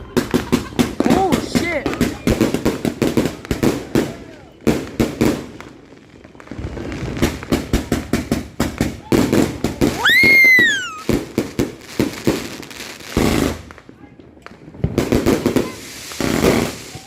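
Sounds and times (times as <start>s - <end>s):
fireworks popping and crackling: 0.0s - 17.0s
whistling firework shriek: 9.9s - 11.2s.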